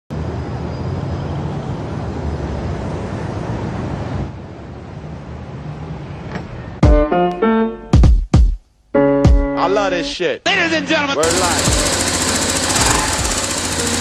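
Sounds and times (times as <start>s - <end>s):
motorcycle engine running: 11.2s - 14.0s.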